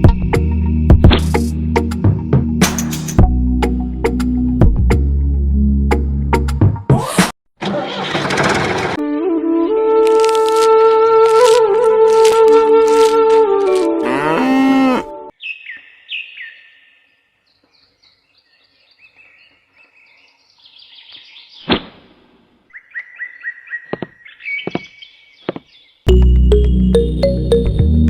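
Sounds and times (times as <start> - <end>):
birds chirping: 14.0 - 21.7, 22.7 - 26.1
music tune: 26.1 - 28.0.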